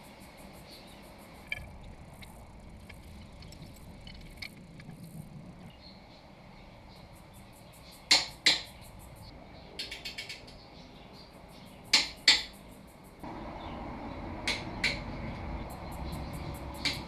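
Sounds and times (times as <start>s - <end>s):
steady background noise: 0.0s - 17.0s
tools knocking on metal parts: 14.4s - 17.0s
light clicks: 14.5s - 17.0s.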